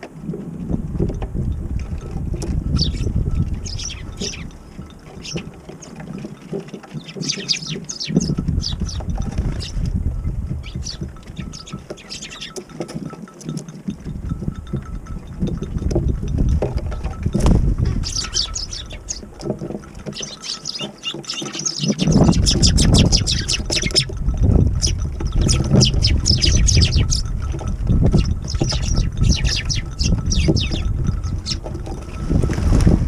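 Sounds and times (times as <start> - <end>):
wind buffeting microphone: 0.0 - 33.0
sparrows chirping: 2.7 - 6.0, 6.9 - 9.9, 10.6 - 12.7, 17.9 - 32.0.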